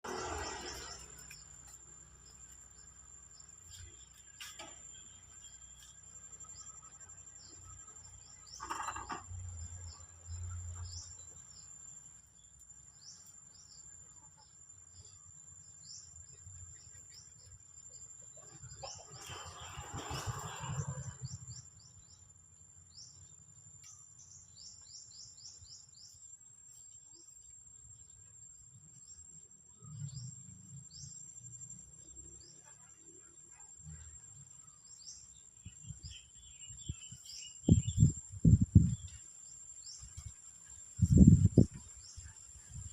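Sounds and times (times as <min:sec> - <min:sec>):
birds chirping: 0:00.0 - 0:13.9, 0:34.7 - 0:42.9.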